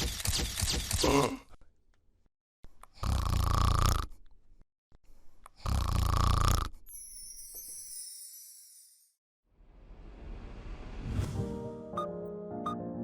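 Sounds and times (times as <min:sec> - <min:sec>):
person snoring: 0:03.0 - 0:04.1, 0:05.6 - 0:06.8.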